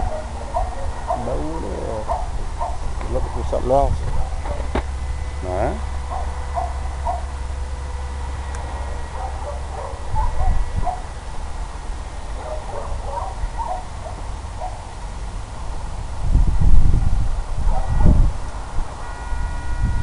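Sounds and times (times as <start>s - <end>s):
wind rumble on microphone: 0.0s - 7.3s, 9.2s - 11.7s, 15.6s - 20.0s.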